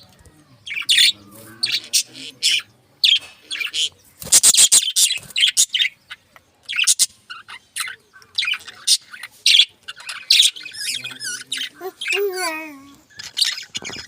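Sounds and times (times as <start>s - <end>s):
small birds chirping: 0.0s - 14.0s.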